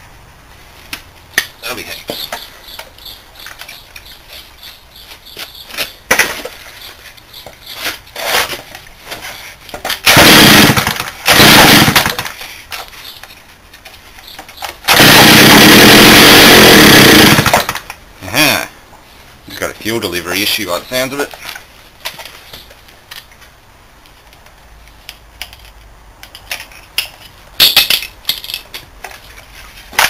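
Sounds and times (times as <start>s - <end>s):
chainsaw engine running: 10.0s - 12.3s, 14.9s - 17.7s
chainsaw pull-starting: 10.0s - 12.4s, 14.9s - 17.8s.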